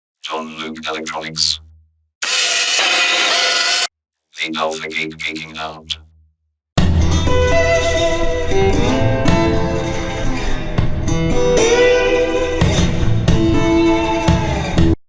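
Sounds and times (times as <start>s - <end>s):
guitar instrumental music: 6.8s - 15.0s.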